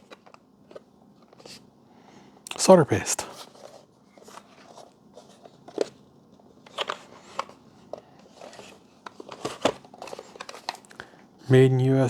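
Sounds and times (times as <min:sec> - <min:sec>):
packaging rustling: 0:03.4 - 0:11.0.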